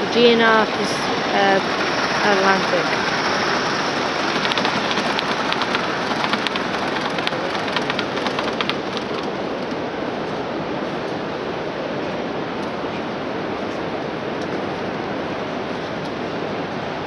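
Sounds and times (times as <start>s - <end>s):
hall background hiss: 0.0s - 12.5s.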